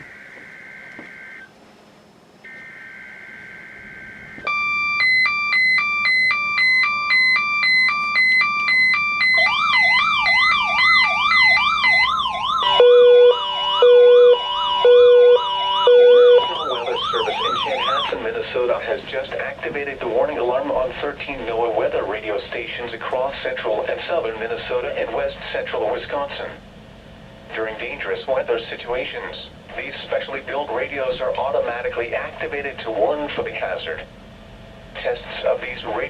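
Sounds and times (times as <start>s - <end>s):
low pulsing beeps: 0.0s - 1.5s, 2.4s - 18.2s
rising and falling warble: 9.6s - 18.2s
high-low alternating beep: 12.6s - 18.1s.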